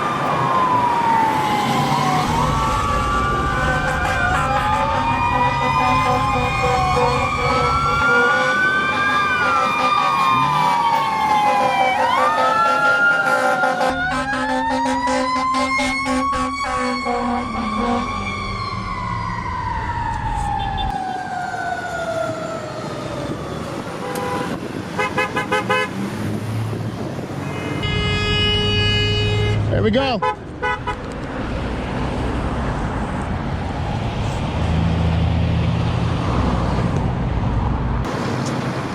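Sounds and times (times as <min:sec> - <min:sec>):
emergency sirens wailing: 0:00.0 - 0:36.9
street traffic: 0:00.0 - 0:38.9.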